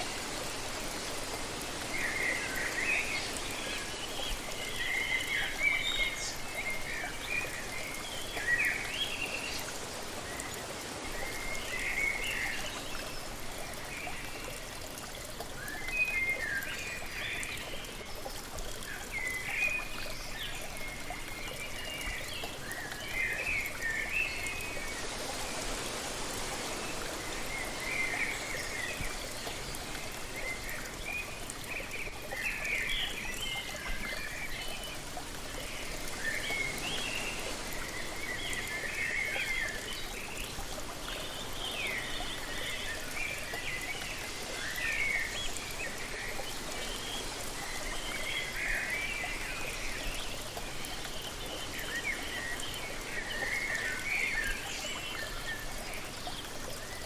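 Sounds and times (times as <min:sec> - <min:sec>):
waterfall rushing: 0:23.8 - 0:31.0.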